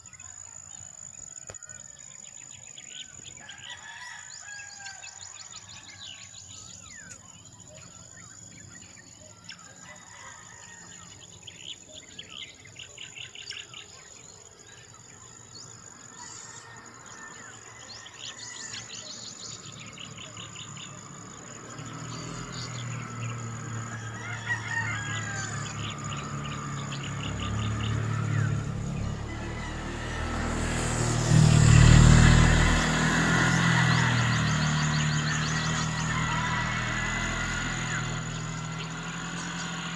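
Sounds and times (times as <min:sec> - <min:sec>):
insect drone: 0:00.0 - 0:39.9
small birds chirping: 0:00.0 - 0:39.9
roosters crowing: 0:03.3 - 0:06.6, 0:09.4 - 0:11.6, 0:15.9 - 0:39.9
low engine hum: 0:18.8 - 0:39.9.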